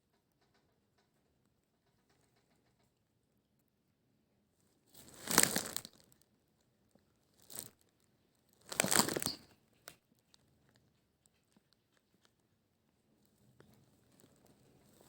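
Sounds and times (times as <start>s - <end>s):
rustling and crinkling: 4.9s - 6.3s, 6.9s - 15.0s.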